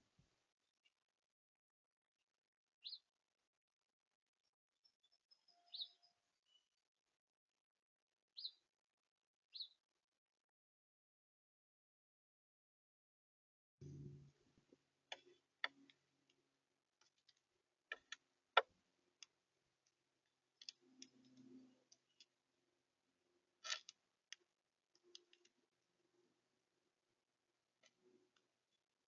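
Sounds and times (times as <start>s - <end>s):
birds pecking at seed: 17.0s - 22.4s, 23.6s - 25.7s.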